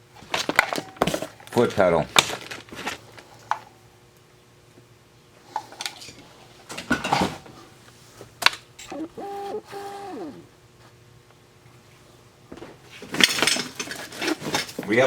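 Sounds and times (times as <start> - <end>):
plastic and metal parts clattering: 13.0 - 15.0.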